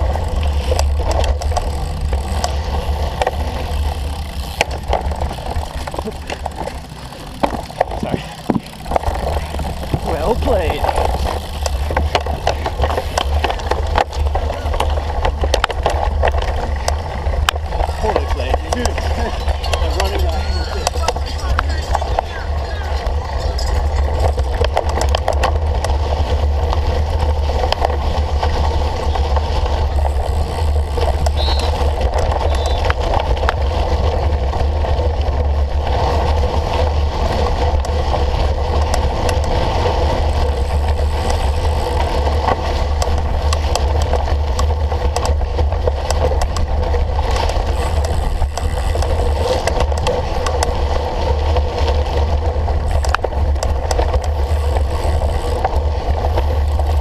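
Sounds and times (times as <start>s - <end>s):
bike tyre and drivetrain noise: 0.0s - 57.0s
clicks and rattles: 0.0s - 57.0s
wind rumble on microphone: 0.0s - 57.0s.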